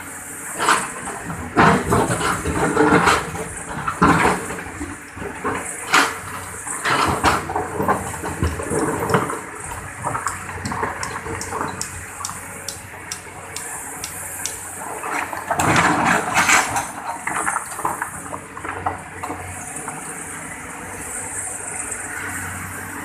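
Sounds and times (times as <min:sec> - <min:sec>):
sharp ticks: 0:10.2 - 0:14.6.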